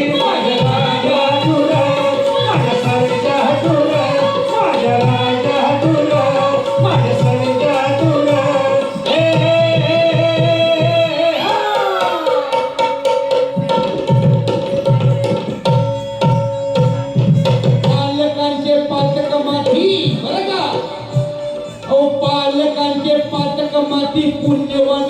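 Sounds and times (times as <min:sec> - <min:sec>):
sustained folk melody: 0:00.0 - 0:10.8
hand drum rhythm: 0:00.0 - 0:22.5.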